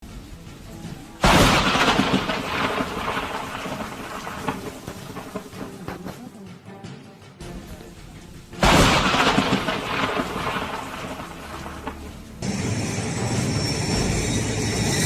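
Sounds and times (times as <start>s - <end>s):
thunder crackles: 0.1s - 6.0s, 8.6s - 15.0s
thunder rumbling: 0.3s - 6.0s, 8.6s - 15.0s
thunder crack: 1.2s - 6.0s, 8.6s - 14.9s.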